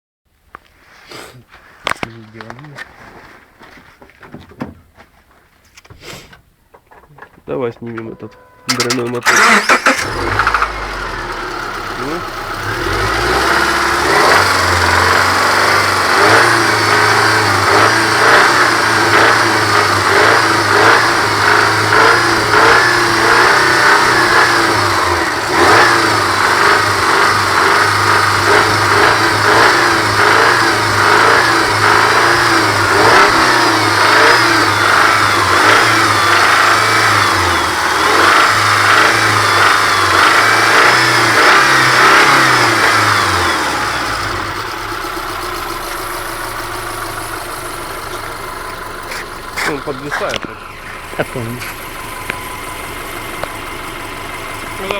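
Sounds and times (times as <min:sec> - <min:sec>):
car engine revving: 0:07.6 - 0:54.9
engine knocking: 0:12.9 - 0:54.9.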